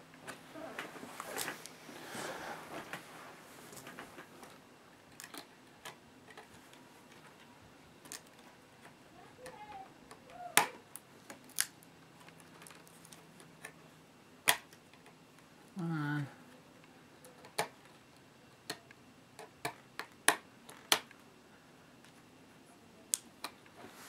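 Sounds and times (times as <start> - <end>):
laptop parts clicking and tapping: 18.6 - 21.2.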